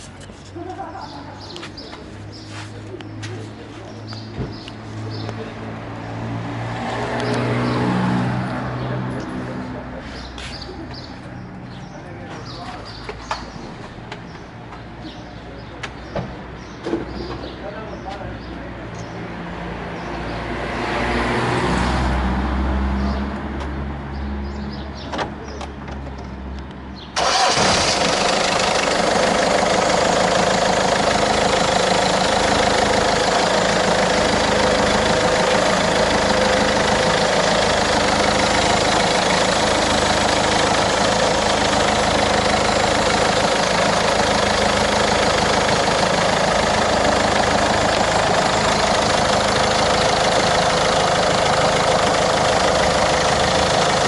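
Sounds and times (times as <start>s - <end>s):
diesel engine idling: 0.0s - 6.2s, 27.1s - 54.0s
engine clicks: 25.2s - 54.0s.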